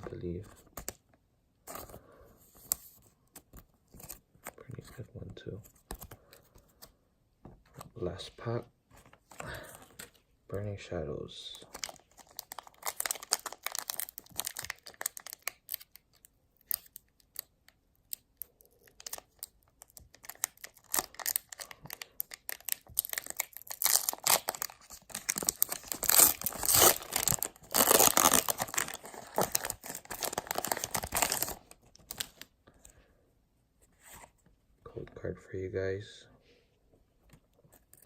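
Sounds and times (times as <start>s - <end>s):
foil wrapper tearing and crinkling: 11.8s - 17.5s, 18.8s - 32.4s.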